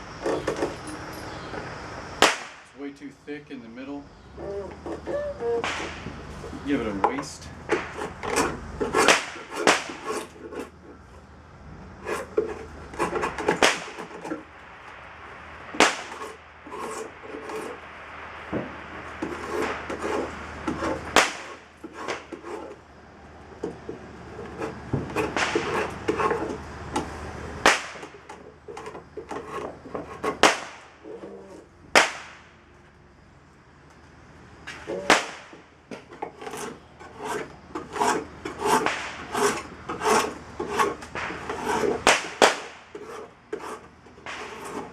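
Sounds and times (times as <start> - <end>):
drawknife scraping wood: 4.7 - 11.3, 12.0 - 14.4, 15.8 - 17.8, 18.6 - 22.8, 23.5 - 27.2, 28.0 - 31.6, 35.9 - 44.9
sharp wooden knocks: 4.8 - 6.2, 7.0 - 10.7, 18.5 - 22.7, 23.6 - 30.9.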